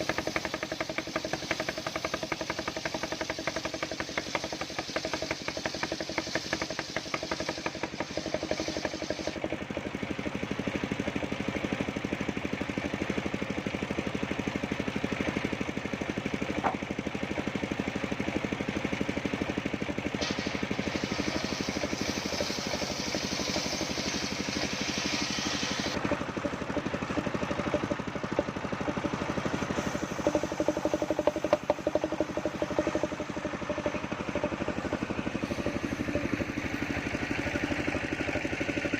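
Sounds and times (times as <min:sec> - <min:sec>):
saw hissing through wood: 0:00.0 - 0:09.5, 0:20.0 - 0:26.1, 0:29.4 - 0:38.9
sawmill engine knocking: 0:00.0 - 0:38.9.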